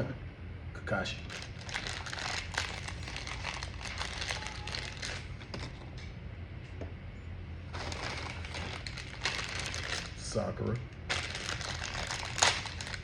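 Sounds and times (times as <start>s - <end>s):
plastic wrapper crinkling: 1.2s - 6.0s, 7.7s - 13.0s.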